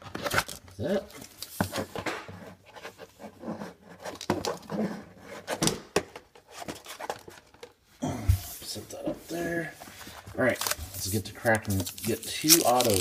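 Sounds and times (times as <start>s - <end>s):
cards tapping and rubbing: 10.1s - 13.0s.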